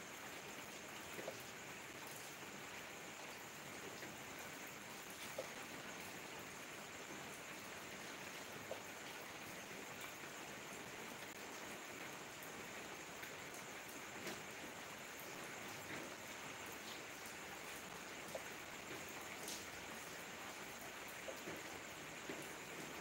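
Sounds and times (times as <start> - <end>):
steady rain falling: 0.0 - 23.0
water drips: 3.7 - 6.2, 15.8 - 22.9.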